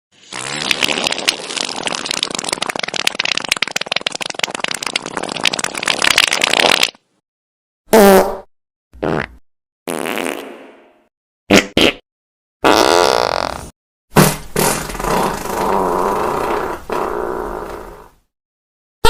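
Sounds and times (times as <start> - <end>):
short pitched fart: 0.2 - 2.4, 7.9 - 10.8, 11.5 - 12.0, 12.6 - 18.1
crackling sputtering fart: 0.2 - 7.0, 7.9 - 10.6, 12.6 - 18.2.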